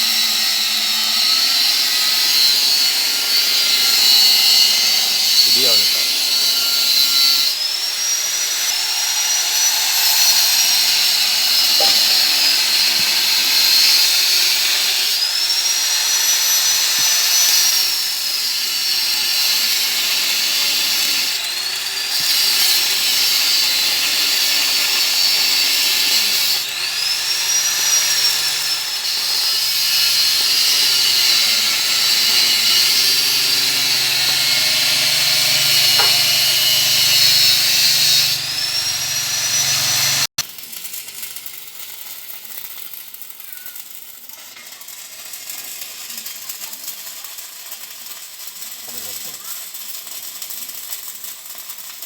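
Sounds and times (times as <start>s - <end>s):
power tool high-pitched whine: 0.0s - 40.4s.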